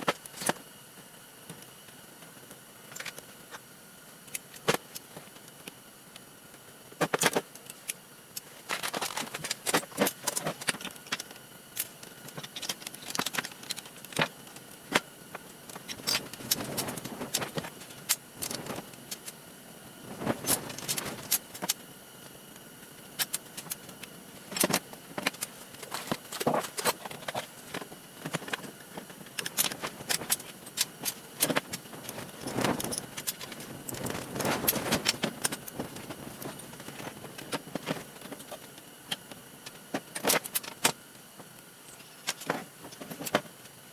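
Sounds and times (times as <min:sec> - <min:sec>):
metal parts clicking and clattering: 0:07.0 - 0:15.0, 0:15.7 - 0:19.4, 0:20.2 - 0:21.8, 0:23.1 - 0:39.2, 0:40.0 - 0:41.0.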